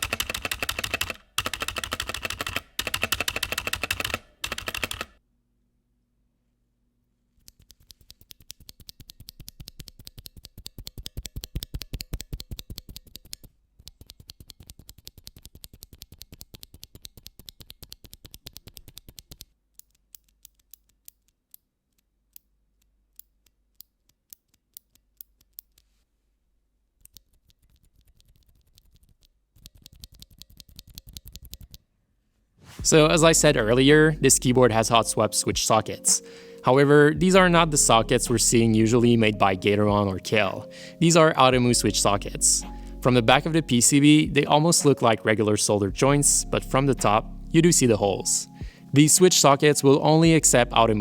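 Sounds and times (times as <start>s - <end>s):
mechanical keyboard typing: 0.0s - 5.2s, 7.5s - 19.5s.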